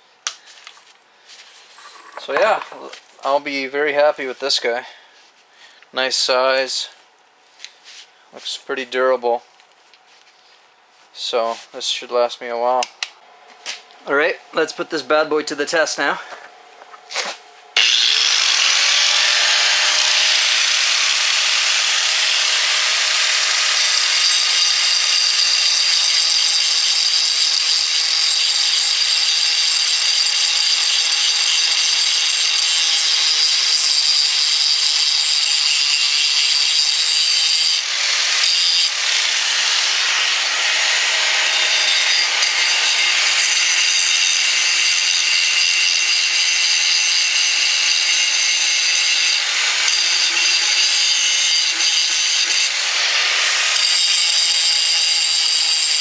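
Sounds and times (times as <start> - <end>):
angle grinder grinding: 1.3 - 3.1, 15.7 - 56.0.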